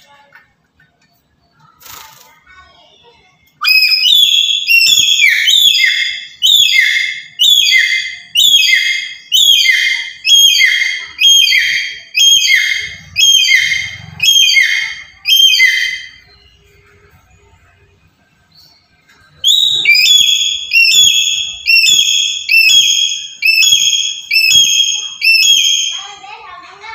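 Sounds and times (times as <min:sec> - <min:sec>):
parrot calling loudly: 0:03.6 - 0:16.4, 0:19.4 - 0:26.4.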